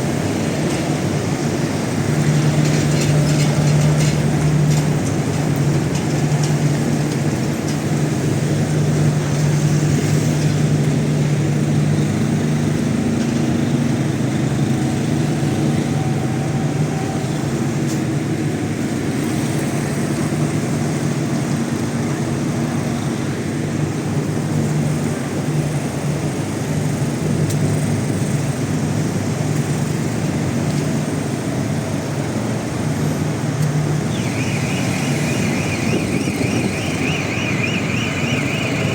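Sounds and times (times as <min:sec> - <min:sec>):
generators humming: 0:00.0 - 0:38.9
high wavering tone: 0:34.1 - 0:38.9.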